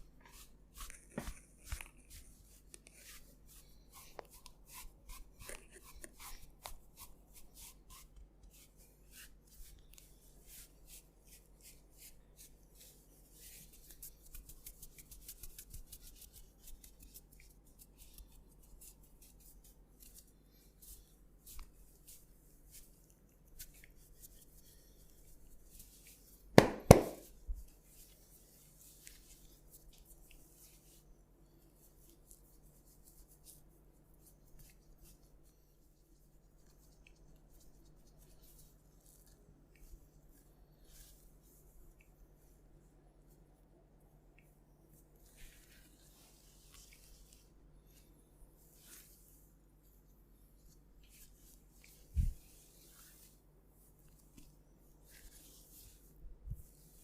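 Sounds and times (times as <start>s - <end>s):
hands rubbing through hair: 0.0s - 42.5s, 44.4s - 57.0s
sharp knocks: 26.6s - 27.2s.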